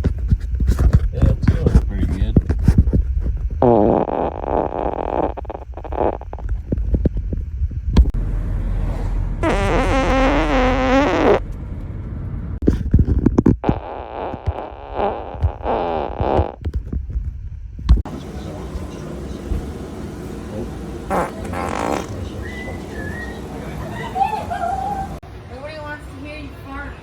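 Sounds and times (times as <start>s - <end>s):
farts: 3.6s - 6.6s, 9.4s - 11.4s, 13.5s - 16.6s, 21.1s - 22.2s.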